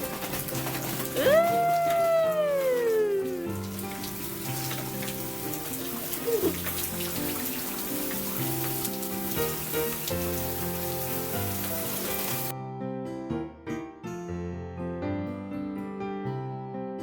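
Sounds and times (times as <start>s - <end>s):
steady rain: 0.0s - 12.5s
piano music: 0.0s - 17.0s.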